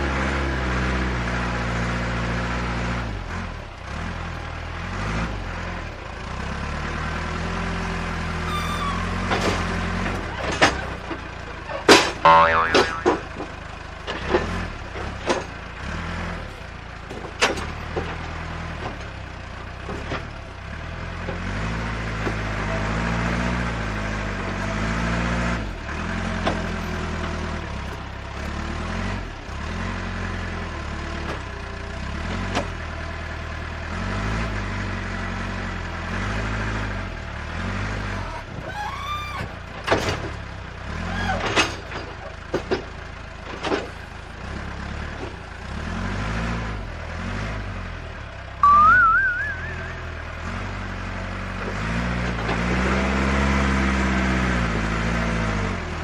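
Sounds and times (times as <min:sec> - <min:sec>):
small engines revving: 0:00.0 - 0:42.8, 0:43.4 - 0:56.0
short rising squeal: 0:08.4 - 0:09.3, 0:48.6 - 0:50.6.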